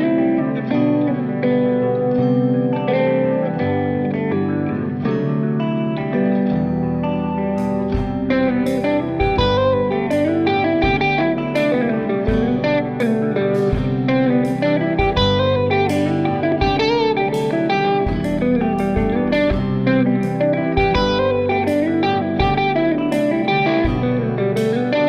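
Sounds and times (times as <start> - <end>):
plucked guitar notes: 0.0 - 25.0
steady bass: 6.6 - 25.0.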